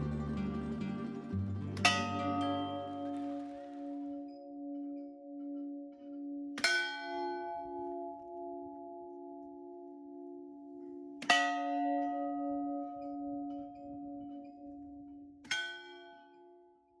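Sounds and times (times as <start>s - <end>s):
church bell ringing: 0.0s - 5.8s.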